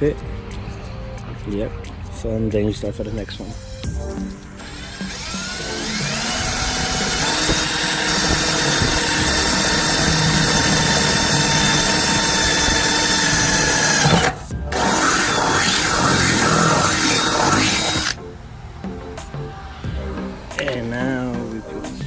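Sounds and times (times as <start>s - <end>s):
power drill whining: 4.4s - 18.2s.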